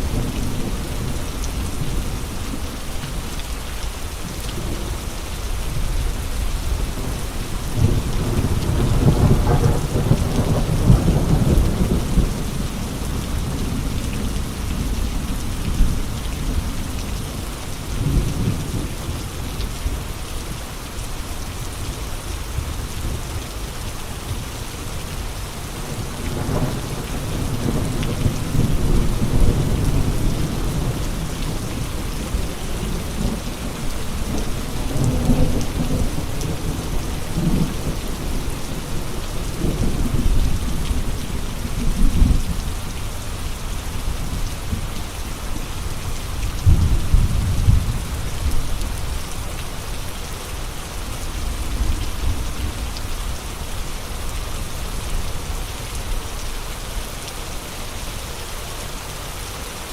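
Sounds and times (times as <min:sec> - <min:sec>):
steady rain: 0:00.0 - 0:59.9
low rumbles of thunder: 0:04.5 - 0:20.0, 0:25.8 - 0:43.2, 0:45.8 - 0:49.9
gusting wind: 0:22.0 - 0:56.5.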